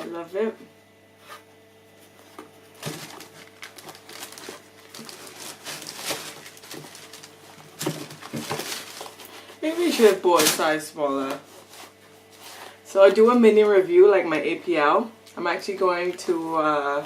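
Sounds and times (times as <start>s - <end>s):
packaging crinkling and rustling: 2.1s - 12.1s.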